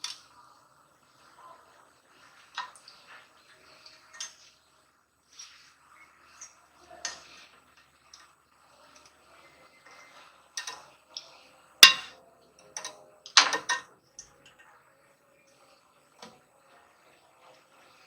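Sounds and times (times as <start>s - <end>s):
metal tools clinking: 11.8s - 12.1s.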